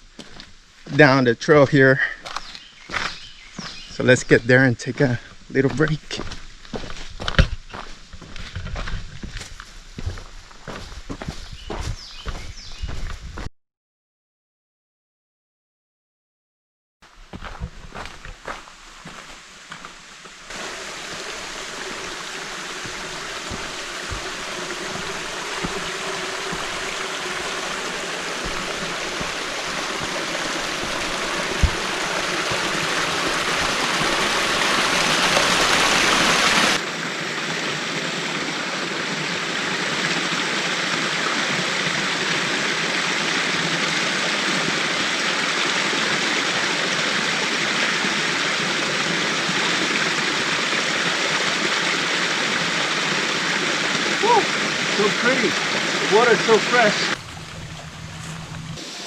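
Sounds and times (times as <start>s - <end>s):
stream splashing over rocks: 20.5s - 59.0s
soft low thumps: 22.8s - 34.2s.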